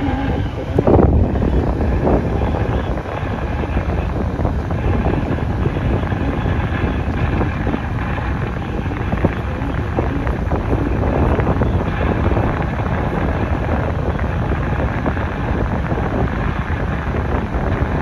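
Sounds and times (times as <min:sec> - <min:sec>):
loud steady rushing noise: 0:00.0 - 0:18.0.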